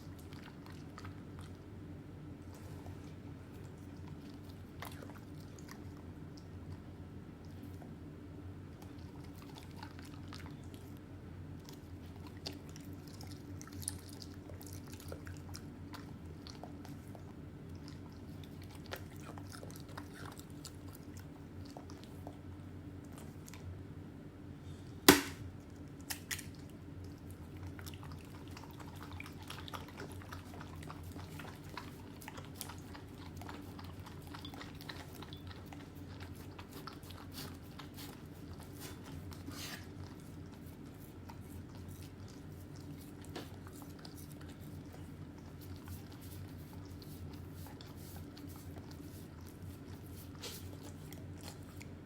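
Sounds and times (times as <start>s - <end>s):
dog chewing food: 0.0s - 8.0s, 8.7s - 23.8s, 25.1s - 52.0s
steady low hum: 0.0s - 52.0s
loud sharp knock: 25.1s - 25.4s.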